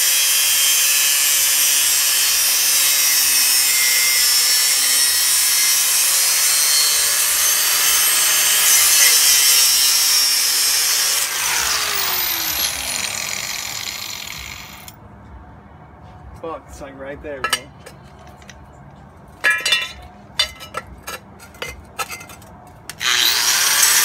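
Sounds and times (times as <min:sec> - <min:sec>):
power tool cutting metal: 0:00.0 - 0:14.9, 0:22.9 - 0:24.0.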